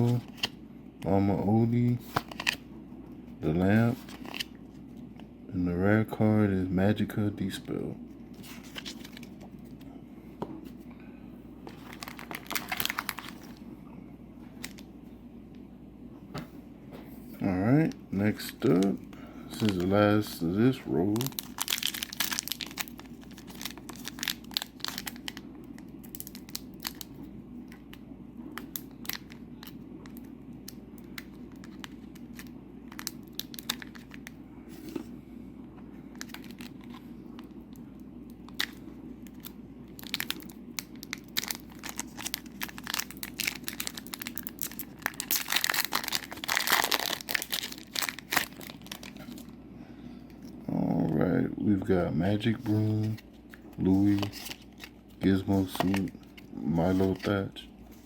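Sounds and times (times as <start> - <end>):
steady low hum: 0.0 - 58.0
cards being handled: 1.9 - 2.6, 52.5 - 58.0
foil wrapper crinkling and tearing: 11.7 - 13.6, 18.2 - 27.2, 28.6 - 34.4, 36.1 - 37.5, 38.5 - 49.5, 52.6 - 57.3.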